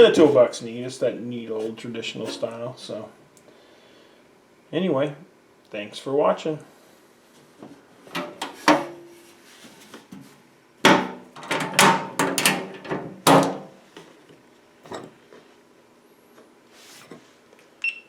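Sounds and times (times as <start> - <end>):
metal toolbox clattering: 10.9 - 13.7.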